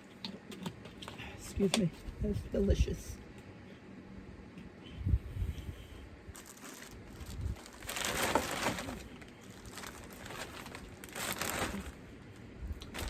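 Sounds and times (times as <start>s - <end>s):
bag rustling and crinkling: 6.3s - 12.1s.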